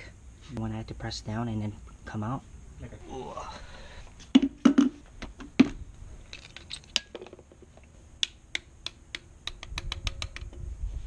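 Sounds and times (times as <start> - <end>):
sharp clicks and taps: 7.8 - 10.6.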